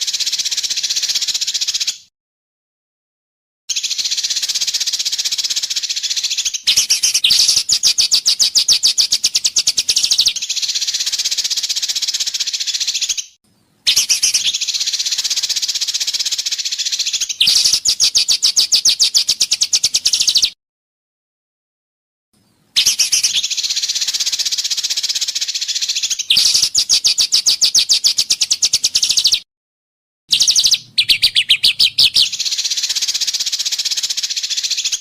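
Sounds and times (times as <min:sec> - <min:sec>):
songbird buzzing trill: 0:13.9 - 0:20.5, 0:30.3 - 0:35.0
rapid sharp bird notes: 0:30.3 - 0:35.0.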